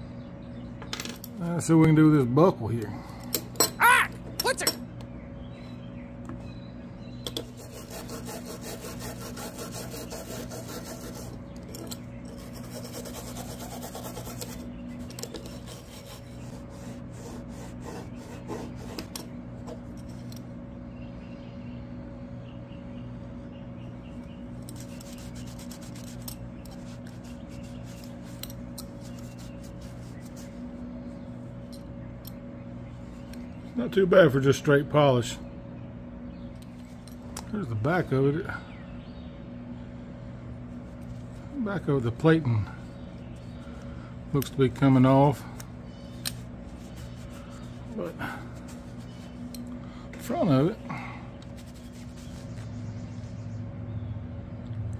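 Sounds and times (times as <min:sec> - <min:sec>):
rubbing strokes polishing metal: 0:07.4 - 0:19.2, 0:24.7 - 0:30.6, 0:46.3 - 0:49.5, 0:51.5 - 0:52.6.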